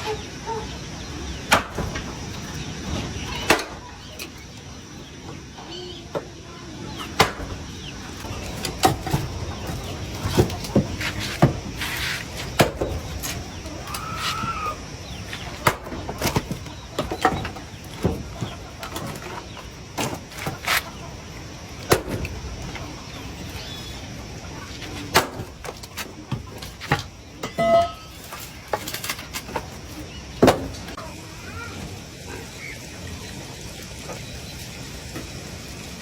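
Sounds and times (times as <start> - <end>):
chicken clucking: 0.0 - 1.3, 13.2 - 21.7.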